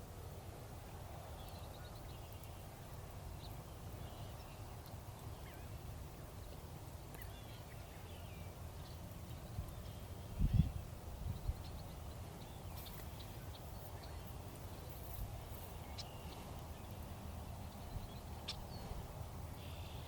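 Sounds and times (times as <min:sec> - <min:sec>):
bird calls: 0:07.2 - 0:20.0.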